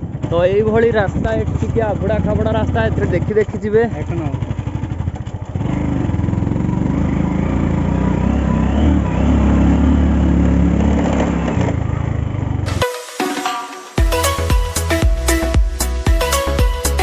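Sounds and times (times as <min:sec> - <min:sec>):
motorcycle engine running: 0:00.0 - 0:12.8
music: 0:12.7 - 0:17.0.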